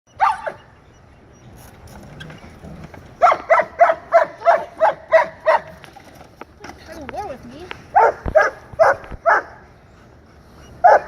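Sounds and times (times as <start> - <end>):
dog barking: 0.2 - 0.6, 3.2 - 5.7, 7.9 - 9.6.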